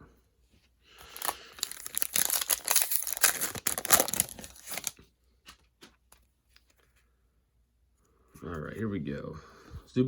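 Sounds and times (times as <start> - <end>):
foil wrapper tearing and crinkling: 1.0 - 5.0.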